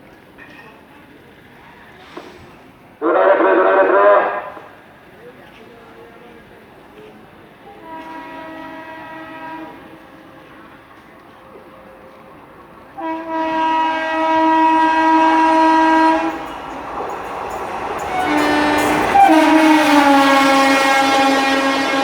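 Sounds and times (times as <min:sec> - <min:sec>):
train rushing at speed: 0:01.0 - 0:22.0
locomotive horn blast: 0:07.7 - 0:10.6, 0:13.0 - 0:16.5, 0:18.0 - 0:22.0.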